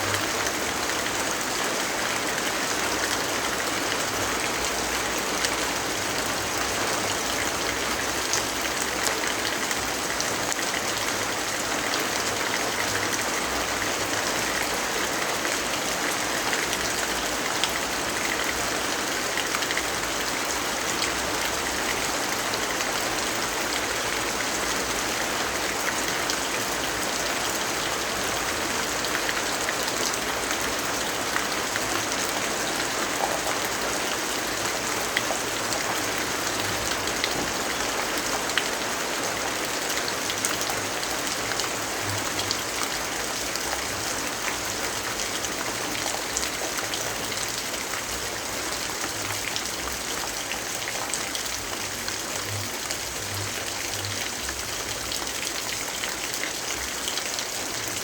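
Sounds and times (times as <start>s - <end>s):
steady rainfall: 0.0s - 58.0s.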